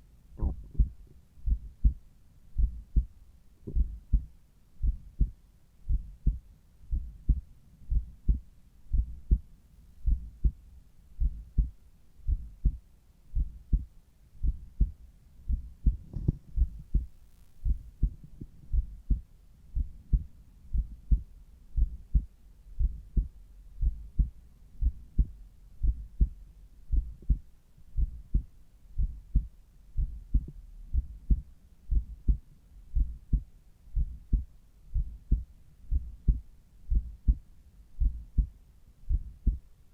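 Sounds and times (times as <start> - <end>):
heartbeat thumps through stethoscope: 0.4 - 2.0, 2.6 - 32.4, 33.0 - 39.7
faint rustle: 16.0 - 18.6.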